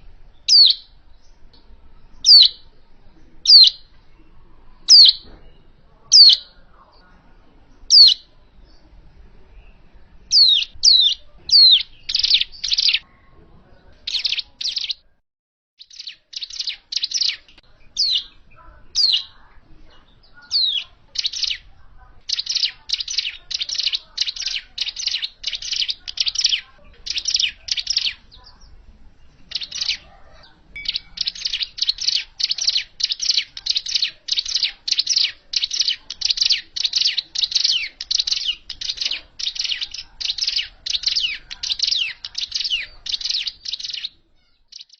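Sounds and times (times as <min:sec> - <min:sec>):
bird whistling and chirping: 0:00.4 - 0:00.9, 0:10.3 - 0:13.0, 0:30.8 - 0:44.9.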